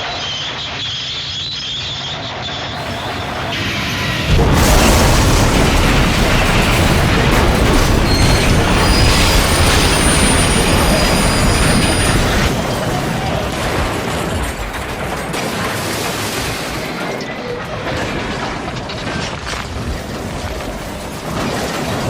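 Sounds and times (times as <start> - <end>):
metallic squeals: 2.8 - 14.3
train crash: 2.8 - 22.0.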